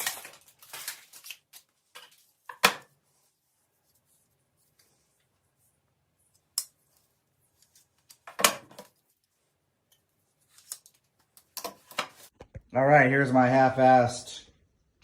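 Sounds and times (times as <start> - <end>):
clicks and knocks of handling: 10.6 - 12.7.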